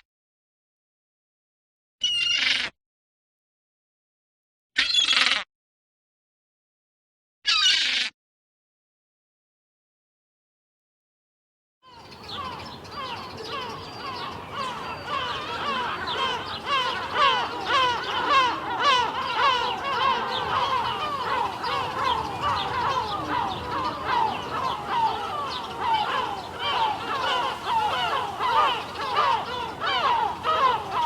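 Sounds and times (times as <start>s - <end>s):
gulls squawking: 11.9s - 31.0s.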